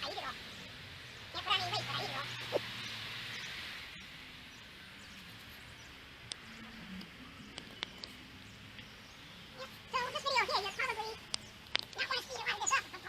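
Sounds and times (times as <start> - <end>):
faint sharp clicks: 11.3 - 12.1.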